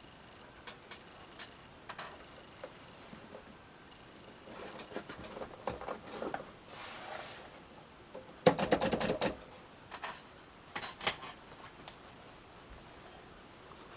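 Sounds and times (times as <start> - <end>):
brief hiss: 6.7 - 7.6
typewriter clicking: 8.4 - 9.4.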